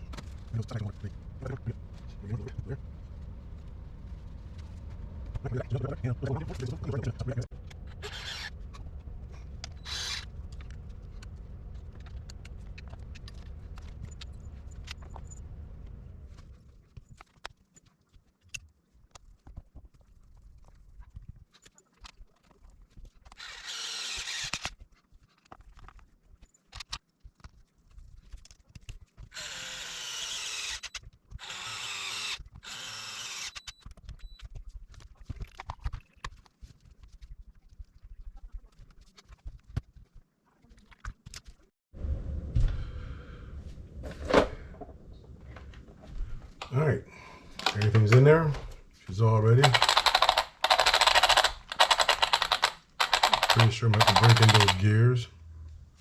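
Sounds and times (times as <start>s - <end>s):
low steady hum: 0.0s - 17.2s, 42.0s - 56.0s
small parts clicking and tapping: 47.5s - 48.3s, 49.6s - 55.0s
short noisy bursts: 49.7s - 54.9s.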